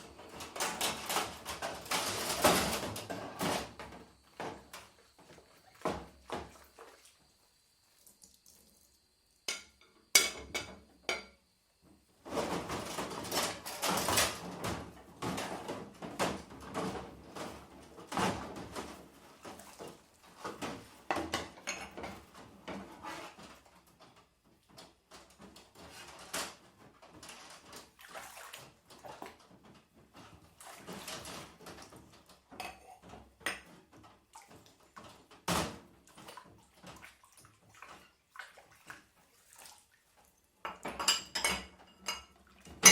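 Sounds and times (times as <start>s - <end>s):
dishes clinking in water: 9.5s - 11.5s, 18.8s - 22.8s, 30.6s - 35.3s, 36.0s - 42.9s.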